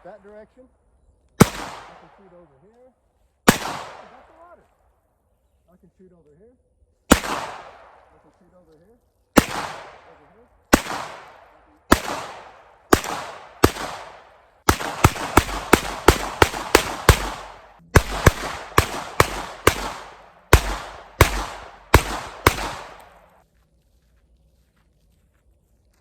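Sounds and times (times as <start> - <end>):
revolver gunshots with echo: 1.4 - 2.5, 3.5 - 4.5, 7.1 - 8.2, 9.4 - 23.4.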